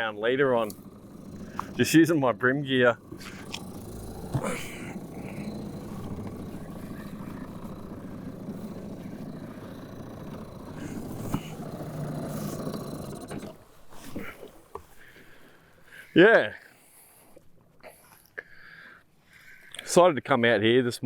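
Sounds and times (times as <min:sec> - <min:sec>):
small boat motor running: 0:00.0 - 0:13.8.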